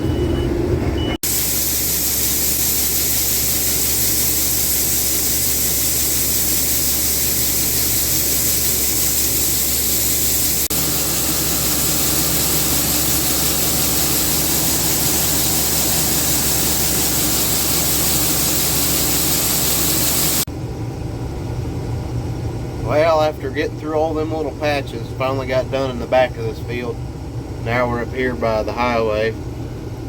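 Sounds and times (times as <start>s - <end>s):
loud even hiss: 1.2s - 20.5s.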